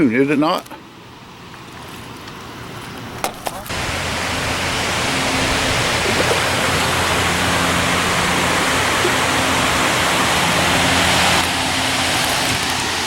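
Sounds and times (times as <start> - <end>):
river water rushing over rocks: 3.6 - 13.0.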